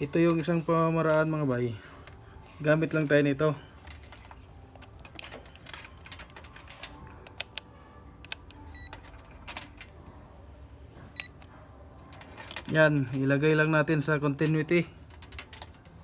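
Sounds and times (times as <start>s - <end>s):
plastic handling clicks: 0.2s - 1.3s, 2.9s - 9.9s, 12.1s - 13.3s, 14.4s - 16.0s.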